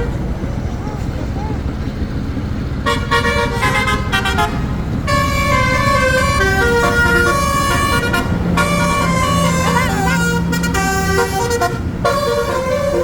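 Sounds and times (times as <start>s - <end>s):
steady low rumble: 0.0s - 13.0s
musical bus horn playing a tune: 2.8s - 13.0s.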